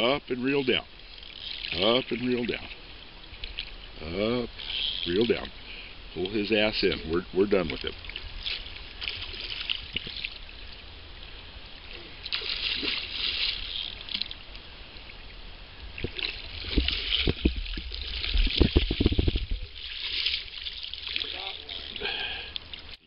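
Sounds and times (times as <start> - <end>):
river water splashing: 0.0 - 23.0
knocks and thumps: 16.7 - 17.7.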